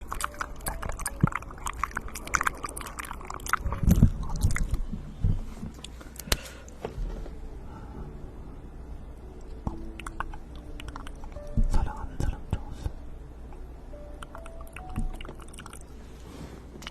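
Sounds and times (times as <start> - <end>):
wet mouth clicks and smacks: 10.0 - 11.4, 14.2 - 15.8.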